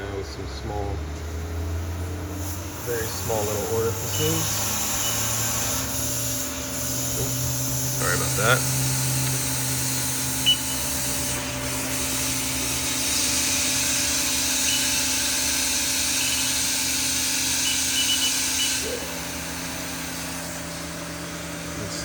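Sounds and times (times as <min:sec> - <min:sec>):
machine humming: 0:00.0 - 0:22.0
coolant jet hissing: 0:01.0 - 0:22.0
short high beeps: 0:10.4 - 0:11.0, 0:14.3 - 0:19.2.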